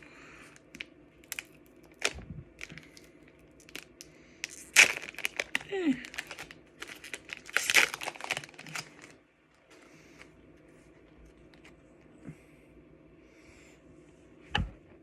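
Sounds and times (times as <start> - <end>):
foil wrapper crackling: 0.6 - 9.2.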